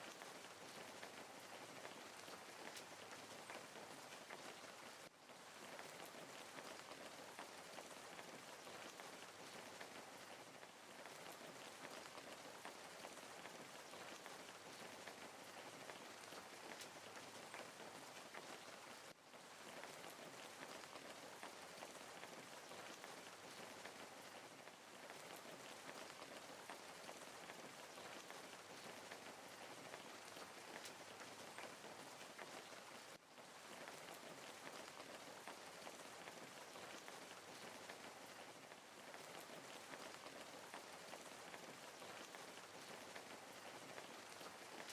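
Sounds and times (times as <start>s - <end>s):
wood fire crackling: 0.0s - 44.9s.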